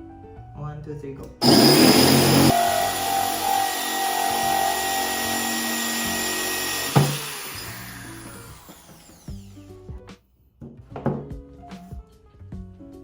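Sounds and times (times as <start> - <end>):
drill stopping click: 1.4 - 9.6
electric drill boring into ceramic: 1.4 - 9.8.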